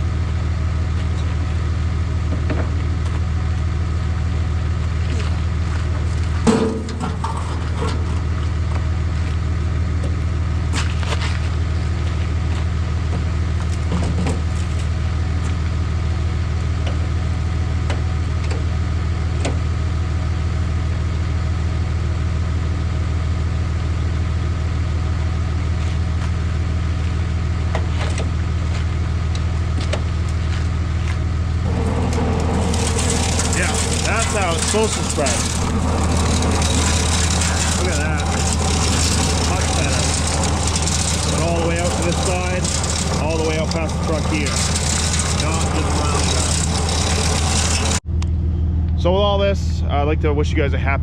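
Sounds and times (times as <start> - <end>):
truck engine idling: 11.4 - 48.8.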